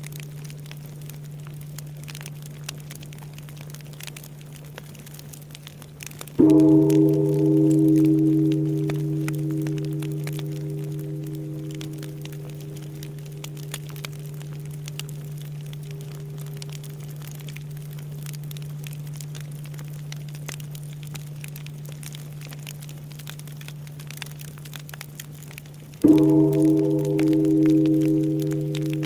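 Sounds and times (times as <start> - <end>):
wood bonfire crackling and popping: 0.0 - 29.0
temple bell humming: 6.4 - 18.2, 26.0 - 29.0.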